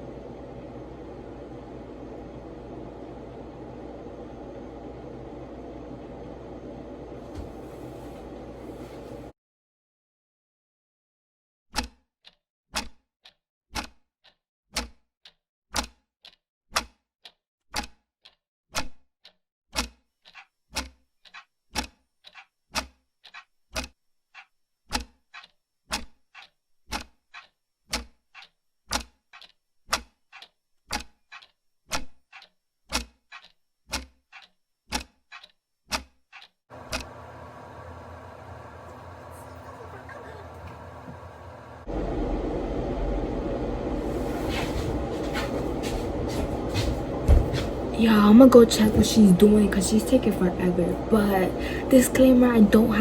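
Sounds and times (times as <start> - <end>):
clock ticking: 13.8 - 16.9, 17.8 - 18.9, 19.8 - 37.2.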